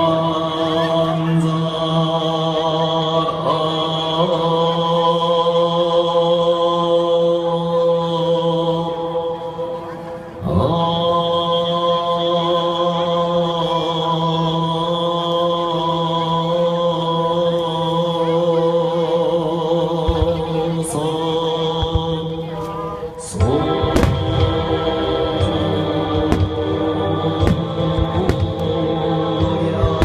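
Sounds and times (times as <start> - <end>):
low monotone chanting: 0.0 - 30.0
fireworks thudding and banging: 21.8 - 22.2, 23.8 - 24.6, 26.2 - 26.8, 27.4 - 28.8.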